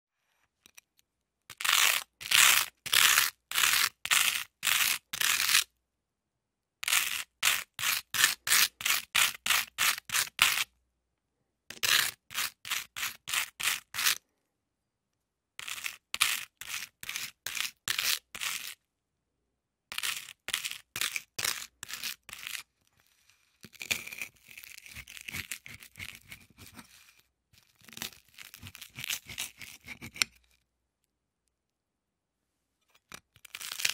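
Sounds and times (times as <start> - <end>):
knife scraping butter on toast: 19.9 - 27.2, 27.8 - 30.5.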